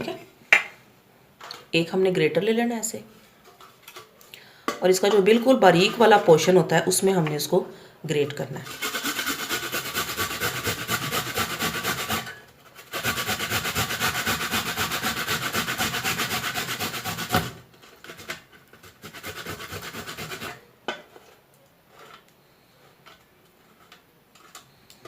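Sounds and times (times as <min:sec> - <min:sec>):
ginger grated on hand grater: 0:08.6 - 0:20.6.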